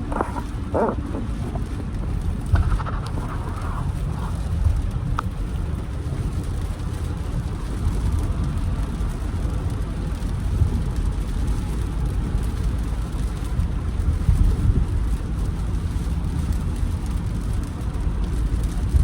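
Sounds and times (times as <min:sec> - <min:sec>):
car engine and road drone: 0:00.0 - 0:19.0
rain hissing: 0:00.0 - 0:19.0.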